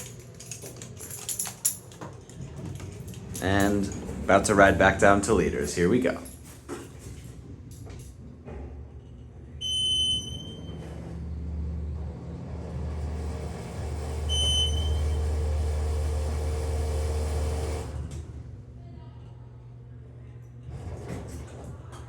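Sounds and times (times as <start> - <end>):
elevator rumble: 0.0 - 16.6
high electronic beep: 9.6 - 10.7.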